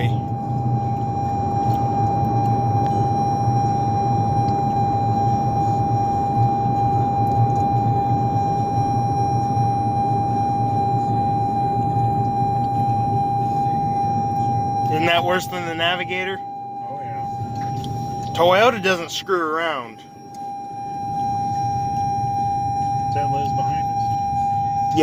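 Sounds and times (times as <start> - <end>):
low car rumble: 0.0 - 25.0
seatbelt reminder steady high tone: 0.0 - 25.0.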